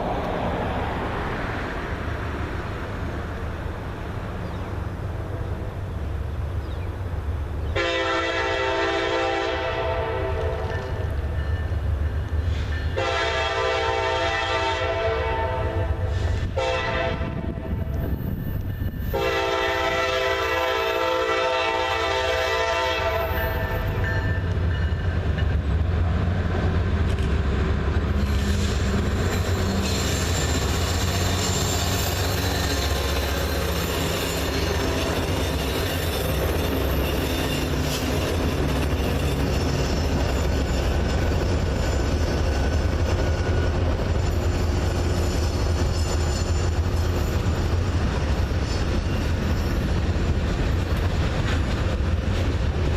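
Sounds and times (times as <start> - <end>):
locomotive horn chord: 7.8 - 11.0, 13.0 - 17.7, 19.1 - 24.1
steel wheel squeal: 28.2 - 47.7.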